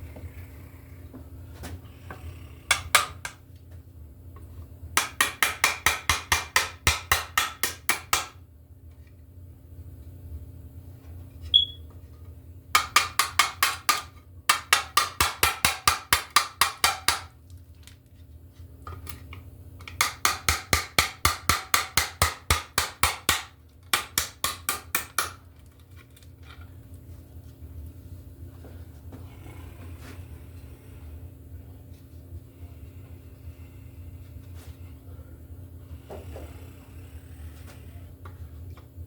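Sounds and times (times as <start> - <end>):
hammer tapping into wood: 2.7 - 3.4, 5.0 - 8.4, 12.8 - 17.3.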